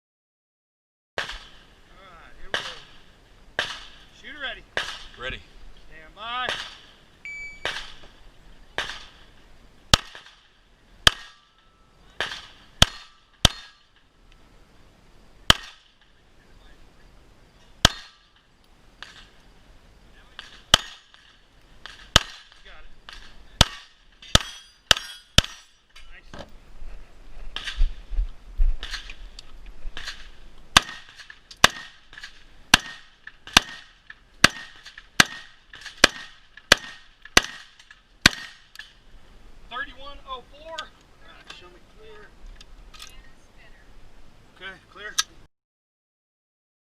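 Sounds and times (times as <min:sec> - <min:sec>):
gunshots: 0:01.2 - 0:01.6, 0:02.4 - 0:03.0, 0:03.6 - 0:04.0, 0:04.8 - 0:05.2, 0:06.4 - 0:06.9, 0:07.6 - 0:08.0, 0:08.8 - 0:09.2, 0:09.9 - 0:11.5, 0:12.2 - 0:13.8, 0:15.5 - 0:16.0, 0:20.4 - 0:25.6, 0:30.0 - 0:38.6
faint ringing tone: 0:07.2 - 0:07.7, 0:11.5 - 0:12.2
shot timer beep: 0:07.2 - 0:07.8.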